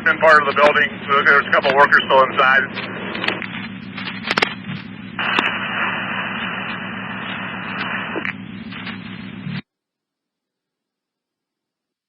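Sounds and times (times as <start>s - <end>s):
radio hiss: 0.0s - 9.6s
low hum: 0.0s - 9.7s.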